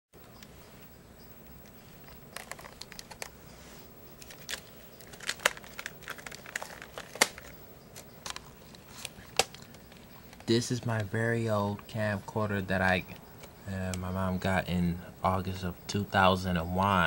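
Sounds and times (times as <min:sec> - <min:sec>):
plastic clicking and crinkling: 0:01.4 - 0:03.4, 0:04.2 - 0:11.1.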